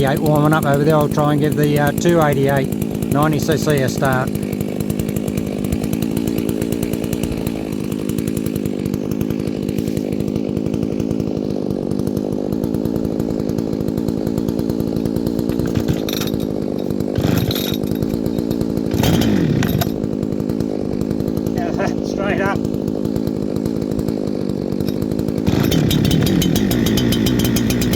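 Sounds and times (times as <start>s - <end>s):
chainsaw idling: 0.0s - 27.9s
short rasping sounds: 20.9s - 23.0s.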